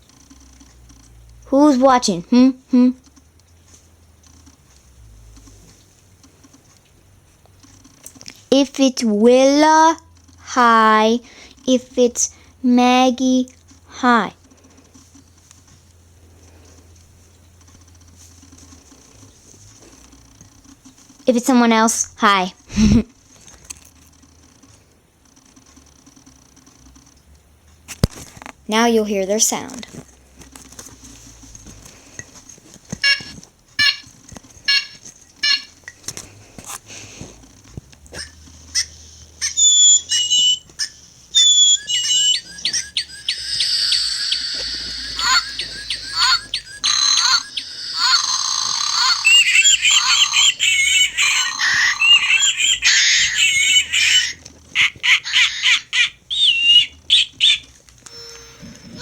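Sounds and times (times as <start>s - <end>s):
toy bird calls through small speakers: 9.6s - 14.4s, 33.0s - 34.1s, 34.7s - 35.8s, 38.2s - 59.0s.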